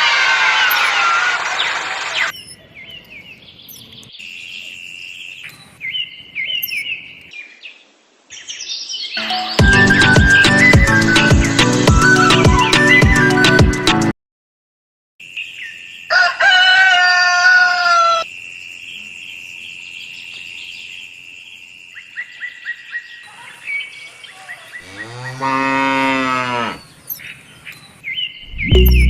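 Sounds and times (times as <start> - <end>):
faint bird chirps: 2.3 - 9.2
cattle mooing: 24.8 - 26.8.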